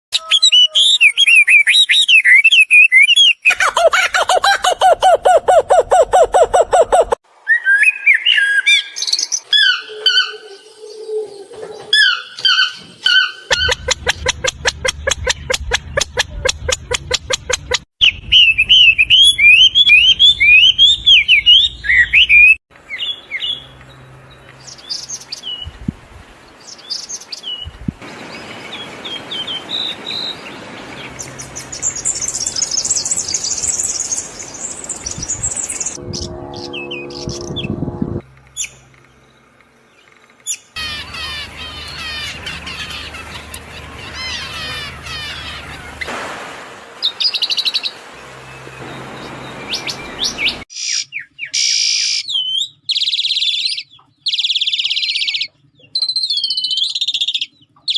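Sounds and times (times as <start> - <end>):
small birds chirping: 8.3 - 36.0, 38.6 - 46.1, 47.0 - 57.9.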